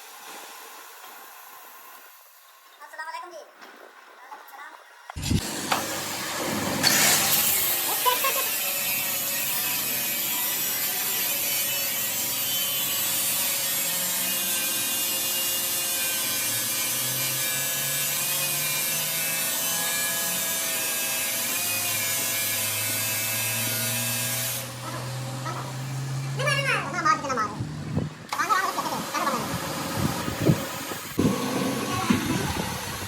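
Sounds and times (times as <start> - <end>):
rasping metalworking noise: 6.8 - 33.0.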